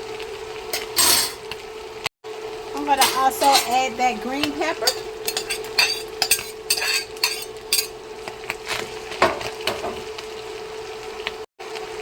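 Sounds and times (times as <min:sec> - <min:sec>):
faint sizzling: 0:00.0 - 0:12.0
spoon scraping frying pan: 0:02.9 - 0:08.0.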